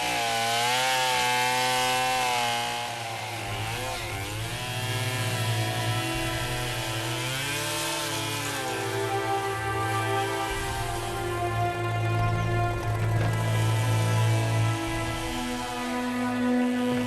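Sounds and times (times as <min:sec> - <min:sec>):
chainsaw cutting wood: 0:00.0 - 0:17.0.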